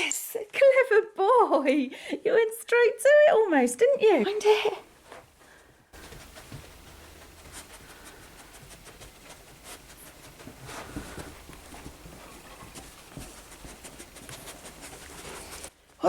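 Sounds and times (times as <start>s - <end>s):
paws and claws clicking: 6.0s - 16.0s.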